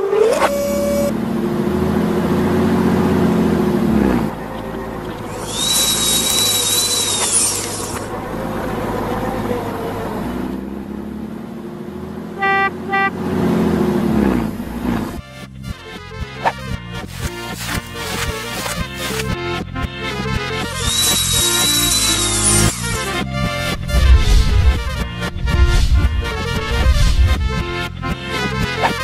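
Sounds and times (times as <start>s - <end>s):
high steady whistle: 0.0s - 1.1s, 5.3s - 8.1s, 20.7s - 23.1s
vehicle engine running: 0.6s - 29.0s
loud hiss: 5.4s - 8.1s, 20.8s - 23.0s
short horn toots: 12.4s - 13.2s.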